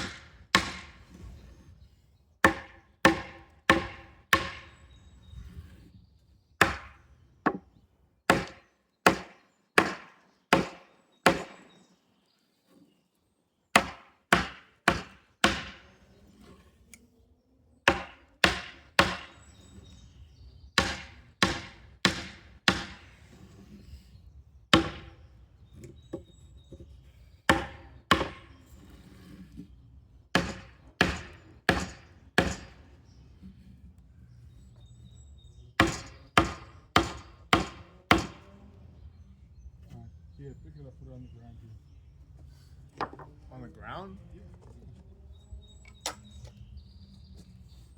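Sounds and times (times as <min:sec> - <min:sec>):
hammer blows on wood: 0:35.8 - 0:38.5.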